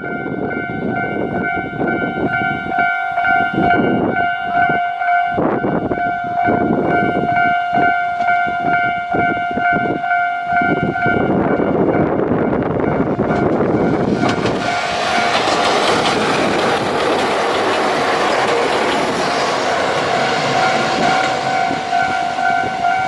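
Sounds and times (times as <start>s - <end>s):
train steady whine: 0.0s - 23.0s
train wheels clacking over rail joints: 13.1s - 23.0s.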